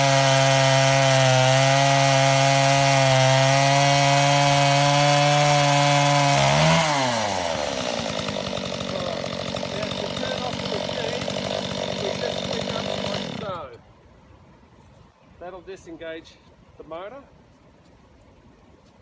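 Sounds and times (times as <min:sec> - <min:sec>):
two-stroke chainsaw engine: 0:00.0 - 0:13.7.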